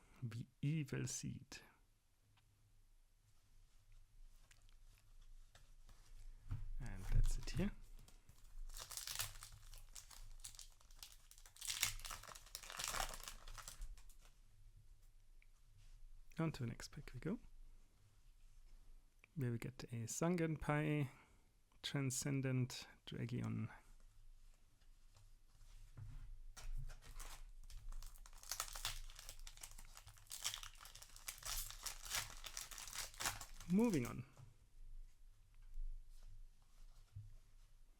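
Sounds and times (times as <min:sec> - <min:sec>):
foil wrapper crinkling: 0:08.4 - 0:14.3, 0:27.0 - 0:34.2.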